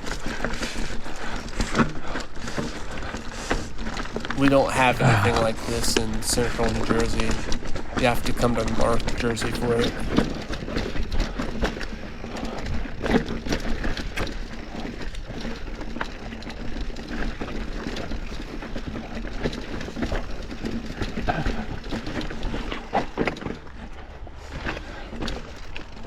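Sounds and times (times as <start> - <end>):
bike rattling over rocks: 6.2 - 26.0.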